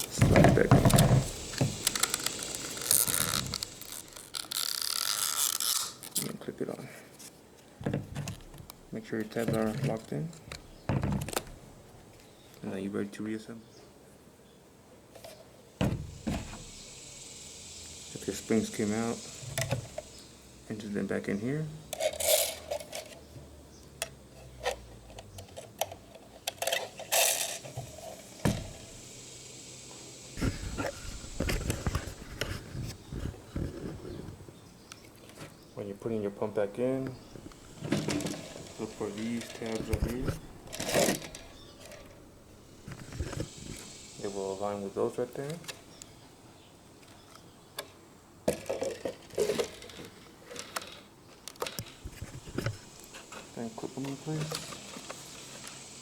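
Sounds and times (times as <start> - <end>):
knocking and rubbing: 0.0 - 4.2, 7.8 - 11.7
parts clicking and rattling: 0.0 - 6.3, 7.8 - 12.6, 15.2 - 23.3, 24.0 - 34.1, 36.8 - 46.2, 47.0 - 56.0.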